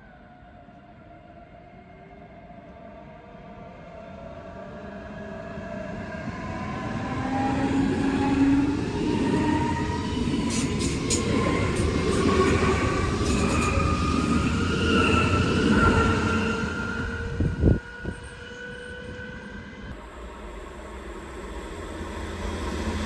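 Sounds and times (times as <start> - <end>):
electric train passing: 3.4 - 23.0
rising multi-tone whine: 6.0 - 23.0.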